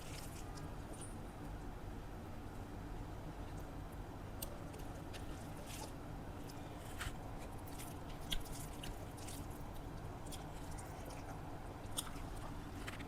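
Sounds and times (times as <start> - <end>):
low steady hum: 0.0 - 13.0
wet chewing clicks and smacks: 7.4 - 13.0.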